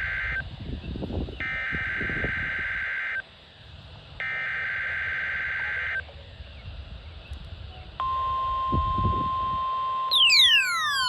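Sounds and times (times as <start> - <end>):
buzzing digital data bursts: 10.1 - 11.0.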